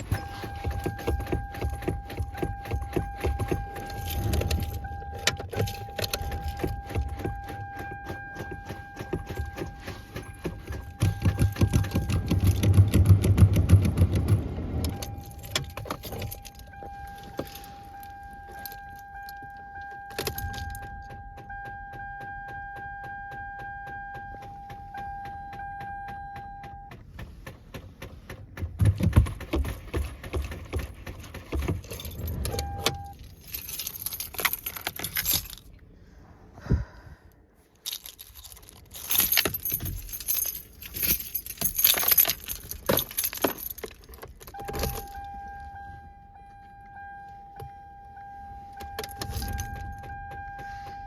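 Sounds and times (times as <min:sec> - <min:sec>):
car engine cranking: 0:00.0 - 0:36.0, 0:37.4 - 0:47.7, 0:48.5 - 0:51.0.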